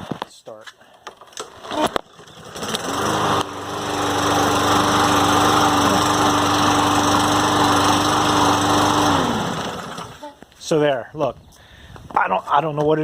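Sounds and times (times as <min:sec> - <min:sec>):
lawn mower engine running: 0:01.1 - 0:10.2.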